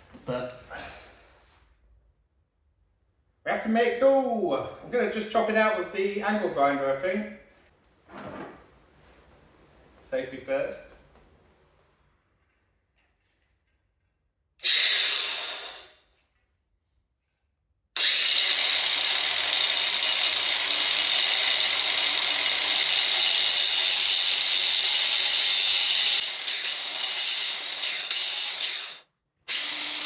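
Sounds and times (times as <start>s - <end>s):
angle grinder cutting into wall: 14.6s - 15.9s, 18.0s - 30.0s.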